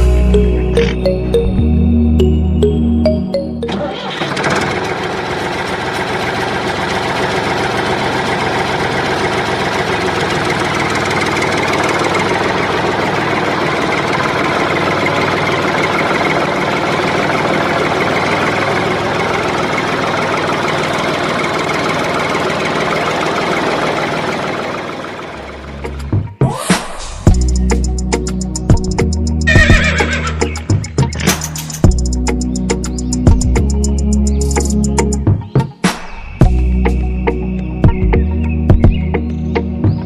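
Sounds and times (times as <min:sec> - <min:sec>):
small tractor engine chattering: 0:03.6 - 0:26.1.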